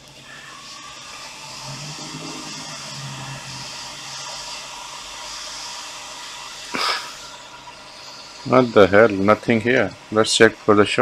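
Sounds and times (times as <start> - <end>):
small fan whirring: 0.0 - 11.0.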